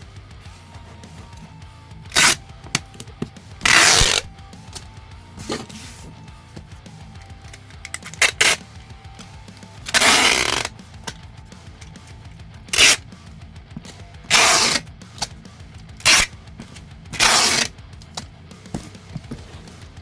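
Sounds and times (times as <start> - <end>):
background music: 0.0 - 20.0
packing materials rasping: 17.2 - 17.7.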